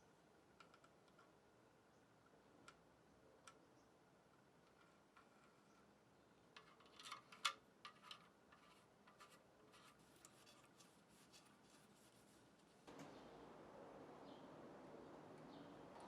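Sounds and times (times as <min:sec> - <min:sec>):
scratchy rubbing: 0:08.6 - 0:12.7.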